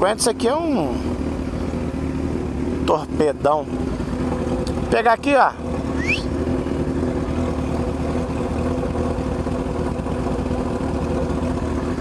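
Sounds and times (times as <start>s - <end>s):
motorcycle engine running steadily: 0.0s - 12.0s.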